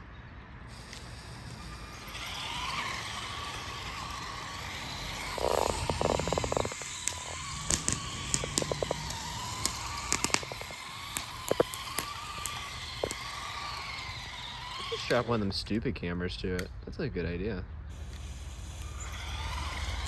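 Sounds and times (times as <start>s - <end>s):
firework crackling and popping: 0.7s - 15.7s, 17.9s - 20.0s.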